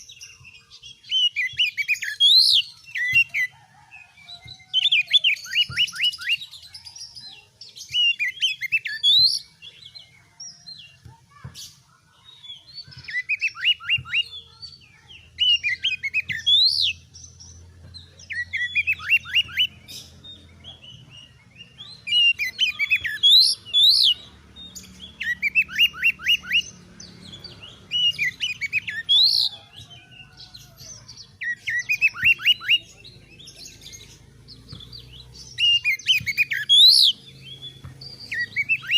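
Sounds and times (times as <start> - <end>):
bird singing whistled notes: 0.0 - 3.4, 4.3 - 6.7, 7.8 - 10.6, 12.4 - 14.4, 18.3 - 30.5, 31.2 - 38.9.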